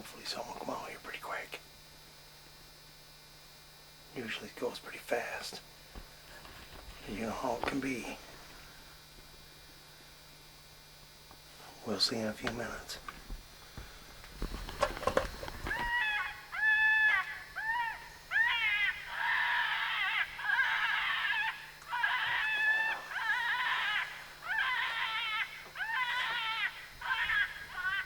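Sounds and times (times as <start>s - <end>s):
high wavering animal distress cries: 15.6s - 28.0s.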